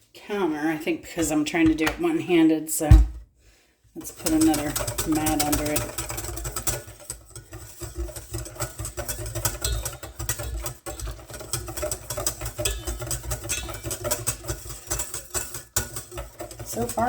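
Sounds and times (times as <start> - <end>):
whisk beating in a bowl: 4.0 - 17.0.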